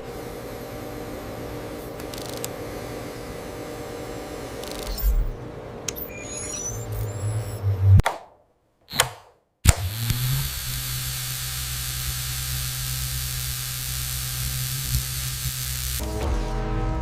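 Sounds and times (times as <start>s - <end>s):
low hum: 4.6s - 8.0s
sharp click: 8.9s - 10.3s
music: 16.0s - 17.0s.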